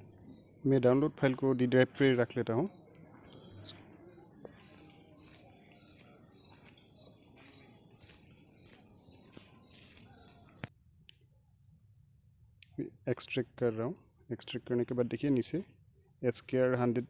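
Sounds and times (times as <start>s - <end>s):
high-pitched chirring: 3.2s - 9.4s.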